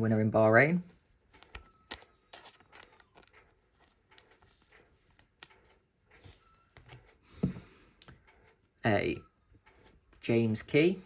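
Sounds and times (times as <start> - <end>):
trading cards rustling and clicking: 1.0 - 7.6.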